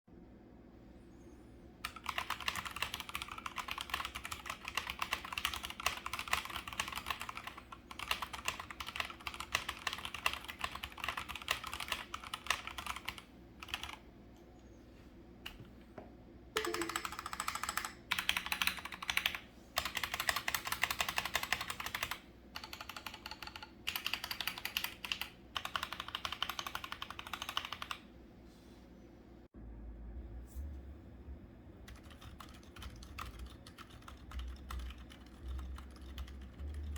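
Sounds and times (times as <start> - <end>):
mechanical keyboard typing: 1.8 - 14.0, 16.6 - 28.0, 31.9 - 36.9.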